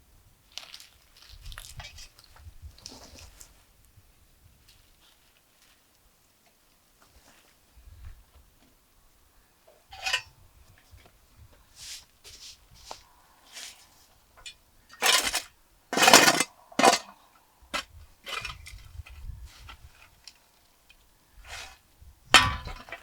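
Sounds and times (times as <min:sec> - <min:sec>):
dishes and utensils clinking: 0:09.9 - 0:10.3, 0:14.4 - 0:17.2
dishes scraping: 0:09.9 - 0:10.3, 0:14.4 - 0:18.8, 0:22.4 - 0:23.0.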